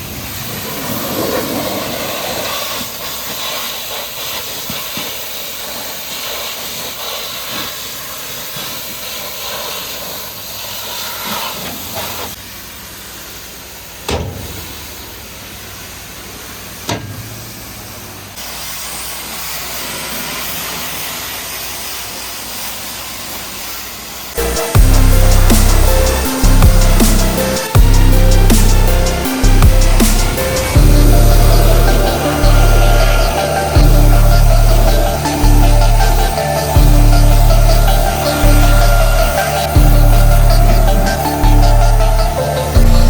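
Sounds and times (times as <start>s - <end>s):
pressure washer spraying: 0.0s - 43.0s
sharp knocks: 14.1s - 14.9s, 16.9s - 17.6s.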